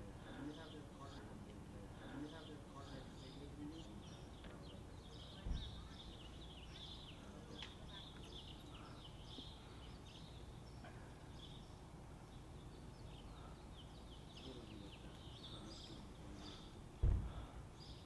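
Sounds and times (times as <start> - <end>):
small birds chirping: 0.0 - 18.0
low thump: 17.0 - 17.5.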